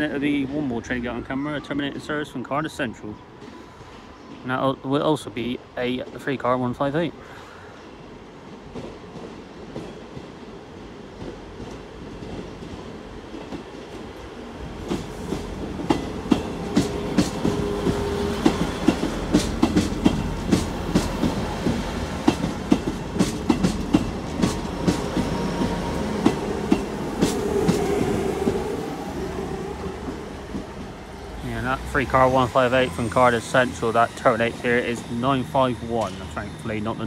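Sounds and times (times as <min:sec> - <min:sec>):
train rumble: 0:08.0 - 0:37.0
train wheels clicking over rail joints: 0:14.8 - 0:28.7.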